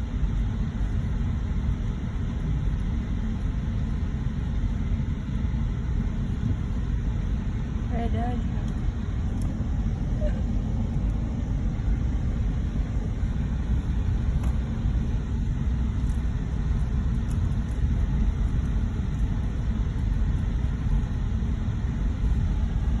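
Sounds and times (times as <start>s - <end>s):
car driving rumble: 6.0s - 18.5s.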